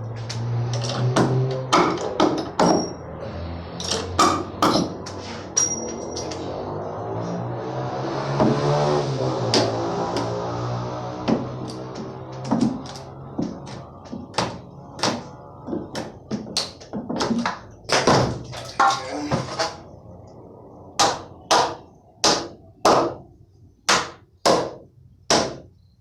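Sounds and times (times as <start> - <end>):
knocks on wooden formwork: 12.4 - 18.4, 21.0 - 23.2, 23.9 - 25.7.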